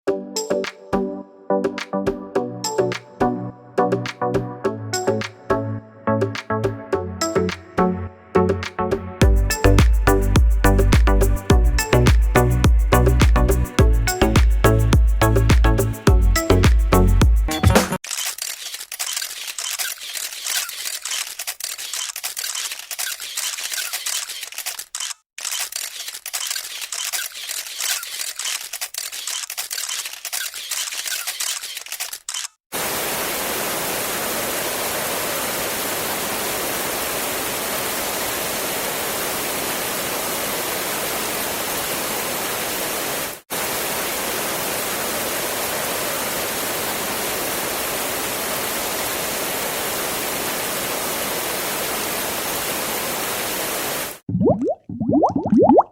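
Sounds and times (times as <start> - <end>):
camera shutter clicks: 18.0 - 32.6
heavy rain hissing: 32.7 - 54.2.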